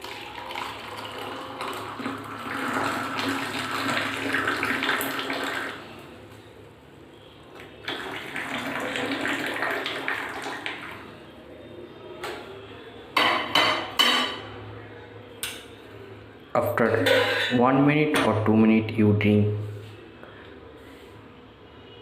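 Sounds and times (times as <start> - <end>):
coffee pouring into a cup: 0.0 - 6.1, 7.6 - 11.2.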